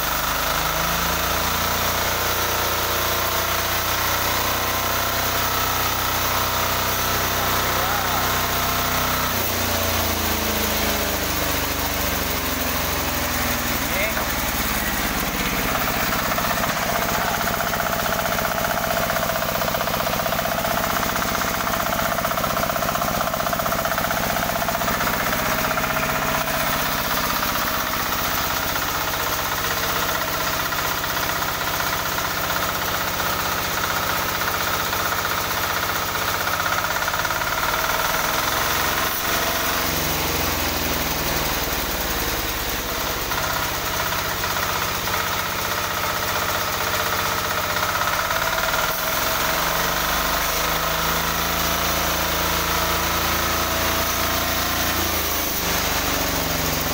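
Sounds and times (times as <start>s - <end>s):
diesel engine running: 0.0s - 56.9s
spinning machinery whine: 0.1s - 56.9s.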